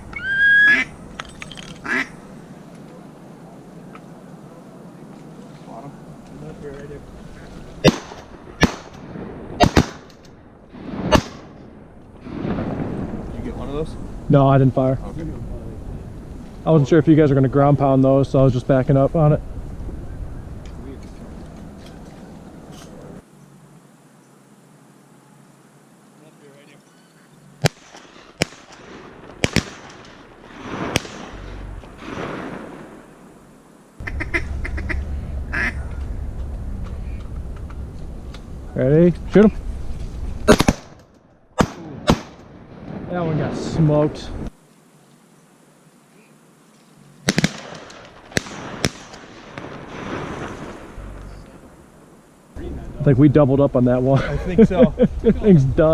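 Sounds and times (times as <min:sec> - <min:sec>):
ducks quacking: 0:00.6 - 0:00.9, 0:01.8 - 0:02.2, 0:34.0 - 0:36.0
shotgun shots: 0:07.8 - 0:11.6, 0:27.6 - 0:33.1, 0:40.5 - 0:41.0, 0:41.6 - 0:42.9, 0:47.2 - 0:50.9
sharp clicks or pops: 0:40.5 - 0:42.5.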